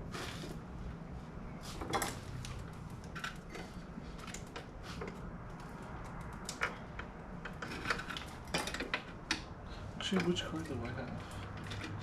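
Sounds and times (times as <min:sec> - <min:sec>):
tools and hardware clinking: 0:06.4 - 0:12.0.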